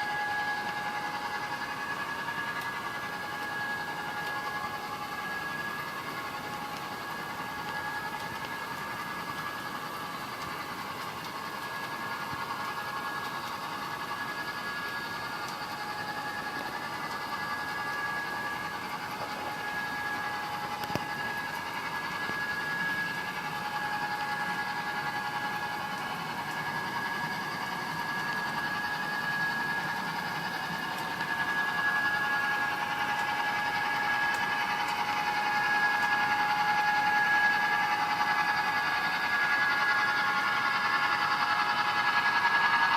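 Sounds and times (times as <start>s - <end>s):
model locomotive humming whine: 0.0s - 42.9s.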